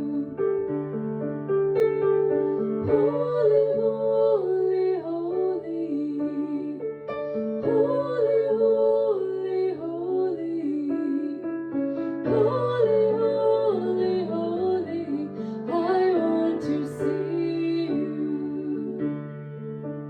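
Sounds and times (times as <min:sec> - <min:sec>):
woman singing a hymn: 0:00.0 - 0:00.5, 0:02.8 - 0:06.9, 0:07.6 - 0:11.5, 0:12.2 - 0:19.2
piano accompaniment: 0:00.0 - 0:20.0.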